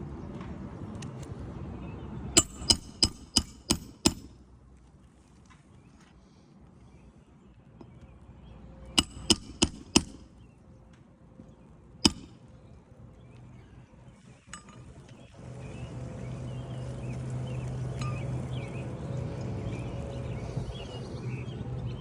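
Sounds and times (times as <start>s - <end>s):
hammer striking nails: 2.4s - 4.4s, 9.0s - 10.3s, 12.0s - 12.4s
steady low hum: 11.5s - 22.0s.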